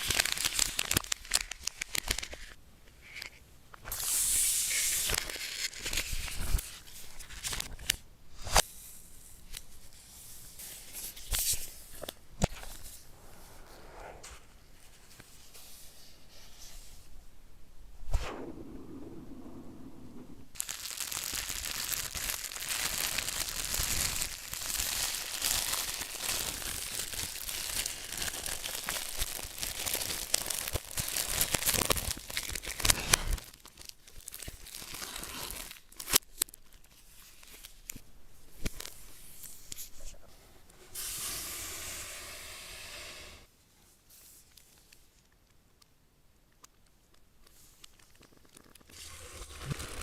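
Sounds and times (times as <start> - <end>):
packaging crinkling and tearing: 0.0 - 2.6, 4.7 - 8.0, 20.6 - 38.0, 46.8 - 50.0
short steady hiss: 3.8 - 5.1, 40.8 - 43.5.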